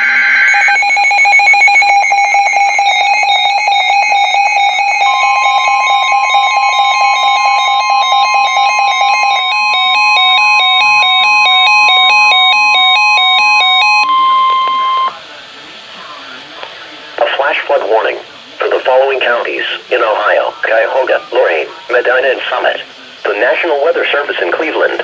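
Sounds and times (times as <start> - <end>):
steady warning alarm tone: 0.0 - 15.2.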